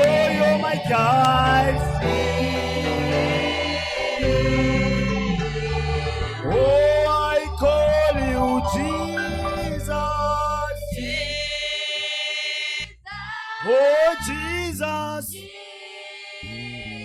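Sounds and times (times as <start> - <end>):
low accompaniment: 0.0 - 11.2
choir singing gospel song: 0.0 - 14.2, 15.3 - 17.0.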